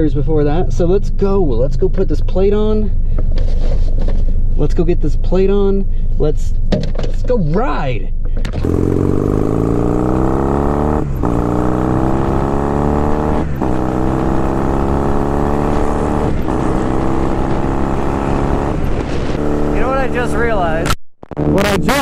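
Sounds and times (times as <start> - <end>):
motorcycle engine accelerating: 8.4 - 22.0.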